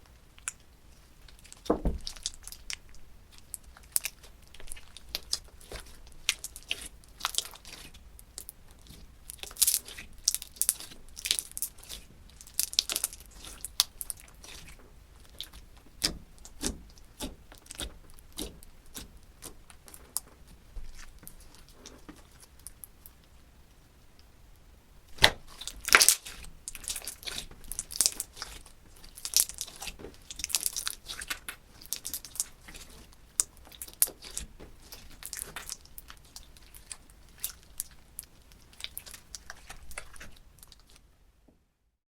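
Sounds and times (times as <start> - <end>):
slime squished by hand: 1.3 - 22.8, 25.1 - 41.0
squelching thumps: 1.6 - 2.2.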